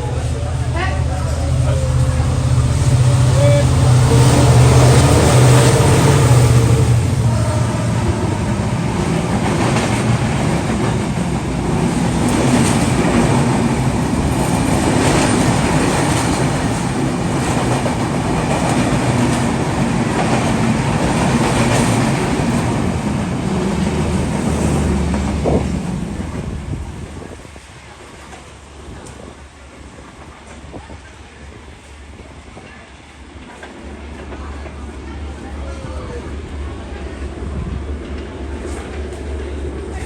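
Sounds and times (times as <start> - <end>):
train passing at speed: 0.0 - 40.0
wheels clacking over rail joints: 8.5 - 27.5.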